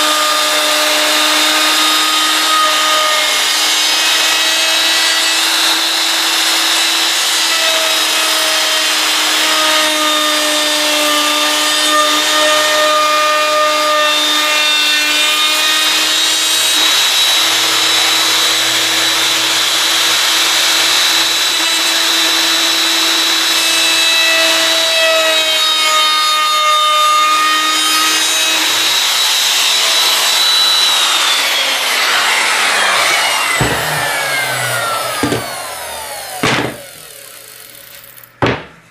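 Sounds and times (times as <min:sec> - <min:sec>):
router cutting wood: 0:00.0 - 0:38.9
router motor spinning down: 0:28.4 - 0:38.4
knock: 0:35.2 - 0:35.5, 0:38.4 - 0:38.8.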